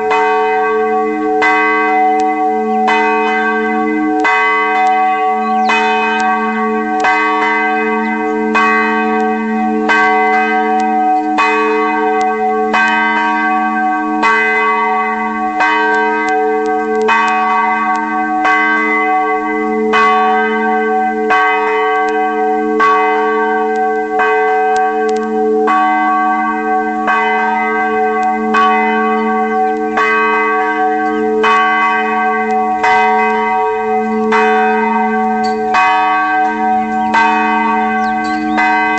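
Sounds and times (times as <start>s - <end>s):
church bell ringing: 0.0s - 38.9s.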